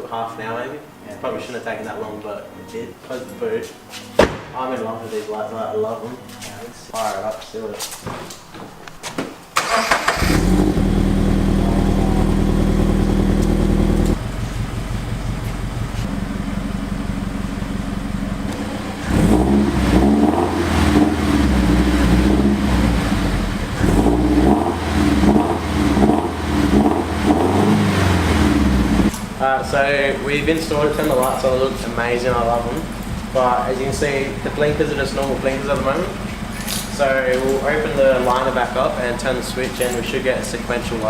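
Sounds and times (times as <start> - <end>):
car engine starting and idling: 9.6 - 41.0.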